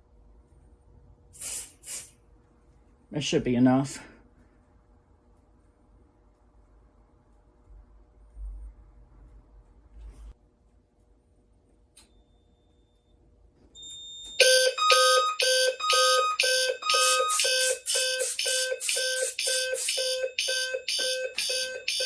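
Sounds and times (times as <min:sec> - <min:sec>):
fire alarm sounders pulsing: 0:13.8 - 0:22.0.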